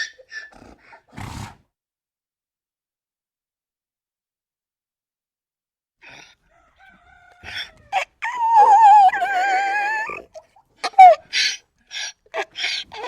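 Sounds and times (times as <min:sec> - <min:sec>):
donkey wheezy breaths: 0:00.0 - 0:01.6, 0:06.0 - 0:08.1, 0:10.8 - 0:13.0
donkey braying: 0:06.0 - 0:13.0.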